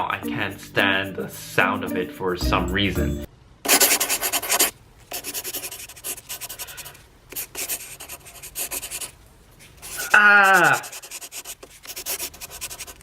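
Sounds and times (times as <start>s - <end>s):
pencil writing on paper: 3.7s - 9.1s, 10.7s - 13.0s.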